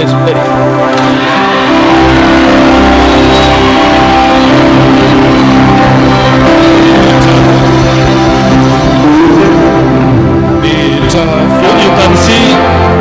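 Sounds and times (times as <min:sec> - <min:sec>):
bass line: 0:00.0 - 0:13.0
loud music with held chords: 0:00.0 - 0:13.0.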